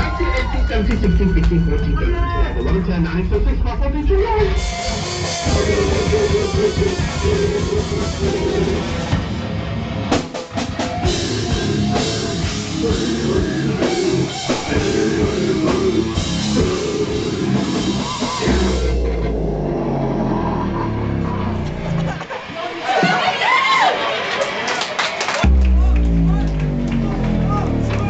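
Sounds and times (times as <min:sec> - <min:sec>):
heavy metal band playing: 0:00.0 - 0:23.8, 0:25.4 - 0:28.0
sharp drum hits: 0:25.4 - 0:27.9.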